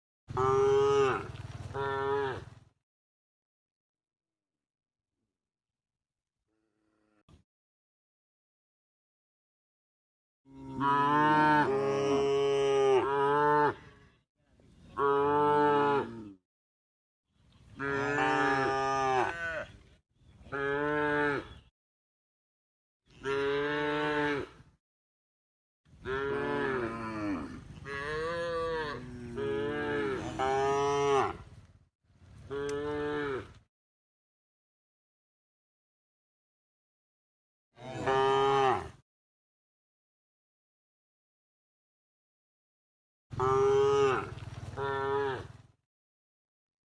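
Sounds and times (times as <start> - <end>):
cattle mooing: 0.4 - 2.5, 10.5 - 13.9, 17.8 - 19.7, 26.0 - 31.4, 32.5 - 33.6, 37.8 - 39.0, 43.4 - 45.6.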